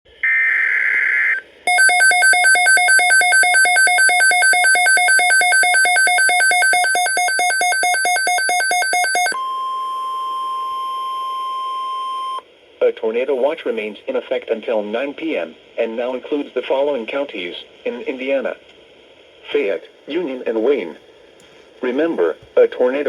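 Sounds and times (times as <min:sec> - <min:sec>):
rapid two-pitch electronic beeping: 0:01.7 - 0:09.4.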